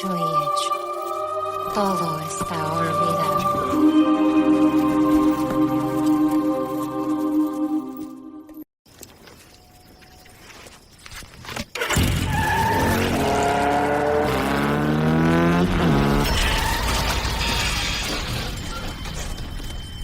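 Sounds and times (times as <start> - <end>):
tyre road noise: 8.9 - 20.0
car engine revving: 12.7 - 16.5.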